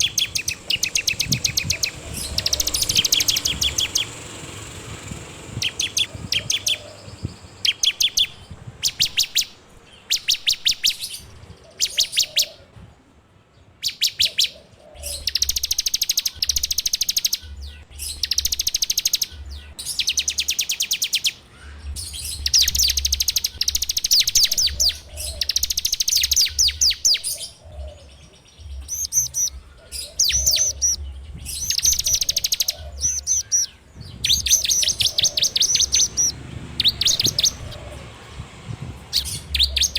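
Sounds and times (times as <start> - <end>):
bird rattling trill: 0.0 - 11.1, 15.1 - 21.4, 22.2 - 27.4, 28.8 - 38.0.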